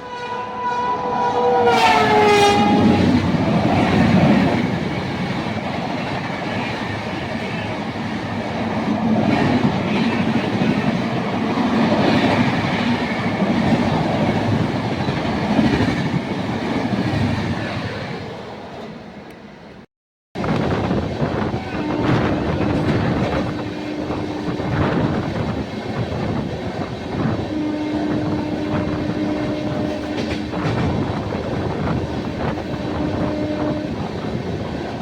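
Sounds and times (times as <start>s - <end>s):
train horn: 0.0s - 4.4s, 21.5s - 24.9s, 27.2s - 30.9s, 32.2s - 34.4s
train coaches rumbling past: 0.0s - 19.8s, 20.4s - 35.0s.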